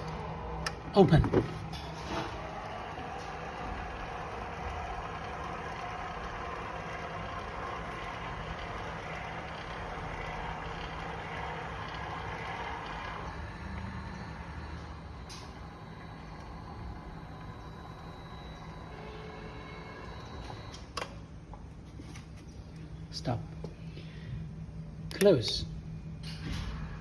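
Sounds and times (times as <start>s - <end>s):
gate opener motors droning: 0.0s - 21.4s.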